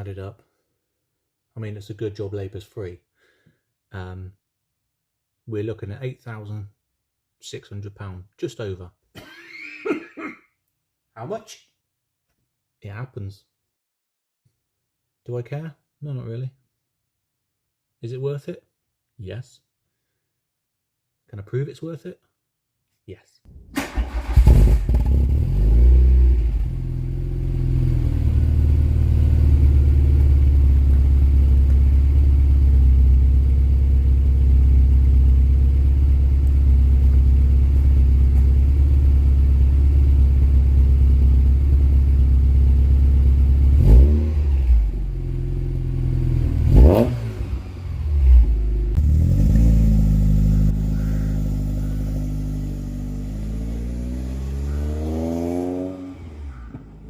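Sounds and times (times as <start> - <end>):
car engine revving: 23.8 - 40.8, 42.7 - 57.0.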